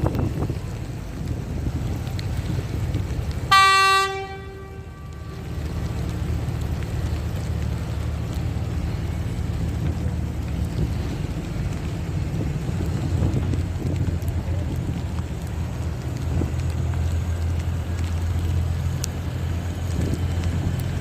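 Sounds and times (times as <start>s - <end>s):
wind on microphone: 0.0s - 3.5s, 9.8s - 15.1s
city traffic: 0.0s - 21.0s
vehicle horn toot: 3.5s - 5.4s.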